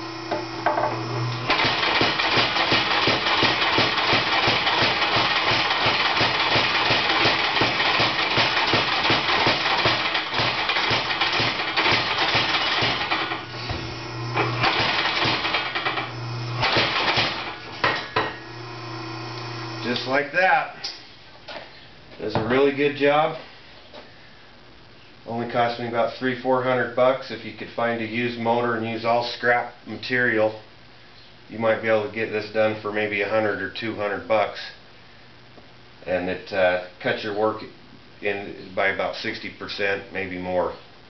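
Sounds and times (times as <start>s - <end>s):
electric motor humming: 0.0s - 3.2s, 11.8s - 17.8s, 18.4s - 20.1s
power hammer pounding wood: 0.6s - 13.8s, 14.4s - 18.3s.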